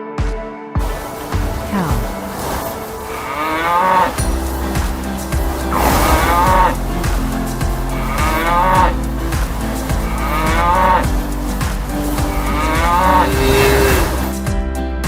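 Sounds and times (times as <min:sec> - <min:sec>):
background music: 0:00.0 - 0:15.0
cow mooing: 0:03.1 - 0:14.3.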